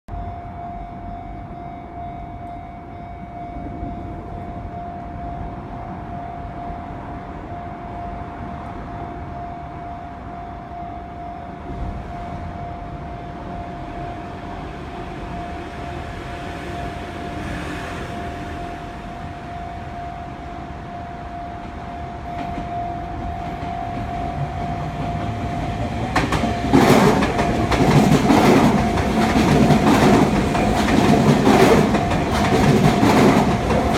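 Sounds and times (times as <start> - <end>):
level crossing alarm ringing: 0.1 - 33.9
train wheels clattering over rails: 22.3 - 33.9.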